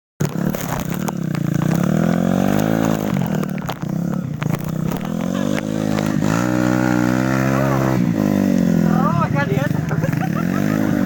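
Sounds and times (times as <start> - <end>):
motorcycle engine revving: 0.2 - 11.0.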